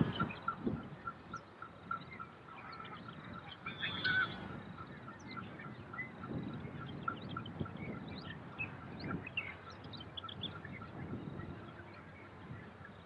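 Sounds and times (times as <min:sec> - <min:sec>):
bird chirps: 0:00.0 - 0:13.0
loud bird call: 0:01.9 - 0:04.6.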